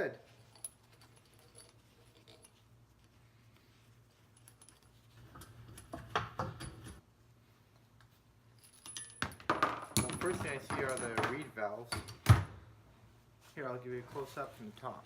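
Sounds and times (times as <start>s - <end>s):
metallic clinks and scrapes of tools: 0.2s - 3.2s, 3.9s - 7.0s, 8.5s - 12.2s.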